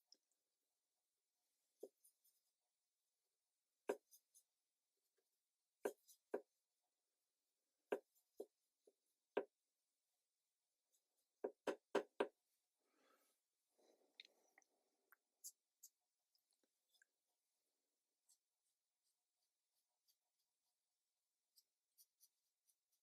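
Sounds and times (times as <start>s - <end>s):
paintbrush tapping hard surface: 11.4s - 12.4s.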